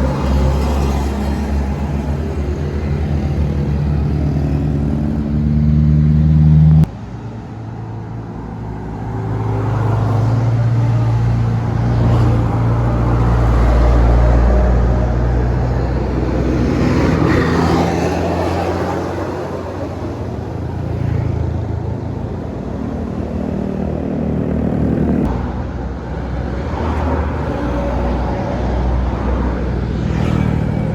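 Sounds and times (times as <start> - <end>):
deep bus engine rumble: 0.0 - 30.9
diesel bus engine pulling hard: 0.0 - 30.9.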